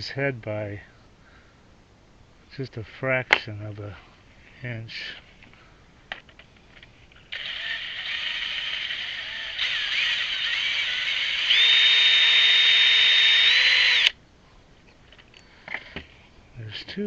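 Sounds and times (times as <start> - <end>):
power driver motor whining: 7.3 - 14.2.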